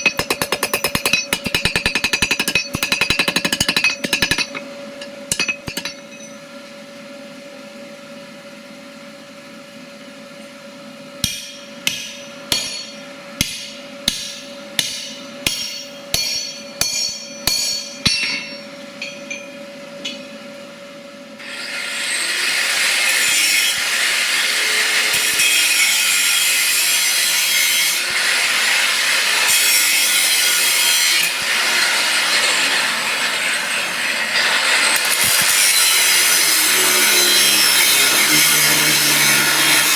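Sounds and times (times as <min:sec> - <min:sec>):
metal rasping: 0:00.0 - 0:06.4, 0:11.2 - 0:19.4, 0:34.4 - 0:39.9
hammer blows on metal: 0:11.2 - 0:19.5
steady hum: 0:11.2 - 0:20.6.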